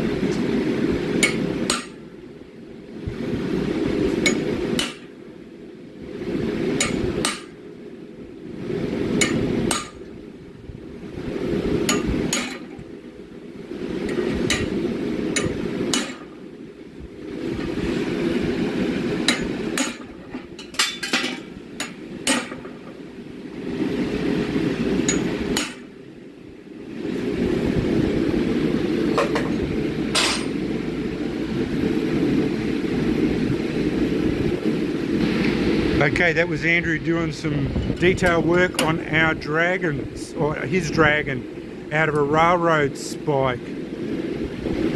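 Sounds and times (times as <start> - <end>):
forge equipment roaring: 0.0 - 7.4, 8.2 - 44.9
hammer striking steel: 4.3 - 5.1, 30.2 - 30.6
low rushing noise: 26.4 - 44.9.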